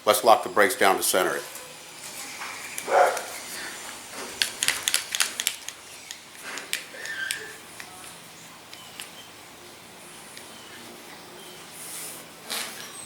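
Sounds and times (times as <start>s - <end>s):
bicycle disc brake clicks and rattles: 4.2s - 7.5s.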